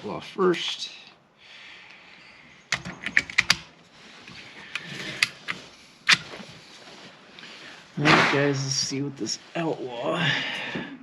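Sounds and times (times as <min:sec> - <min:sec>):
cartridges clicking into magazine: 0:02.8 - 0:03.7.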